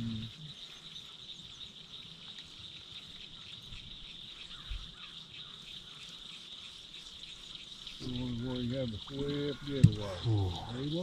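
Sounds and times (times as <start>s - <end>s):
faint bird chirps: 0.0s - 11.0s
high-pitched insect chorus: 0.0s - 11.0s
low thump: 9.8s - 10.2s.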